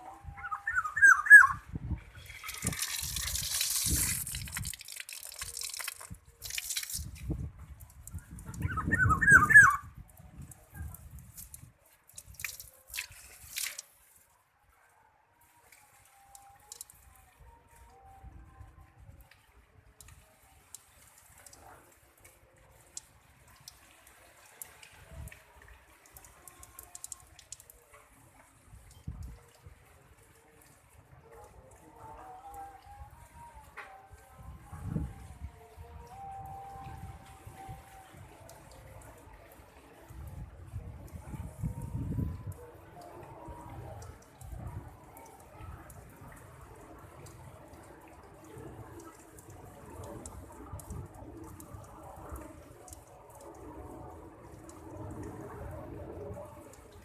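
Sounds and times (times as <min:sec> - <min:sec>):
water splashing and dripping: 0:00.0 - 0:14.4, 0:15.4 - 0:57.0
bird whistled calls: 0:00.3 - 0:01.6, 0:08.5 - 0:09.9.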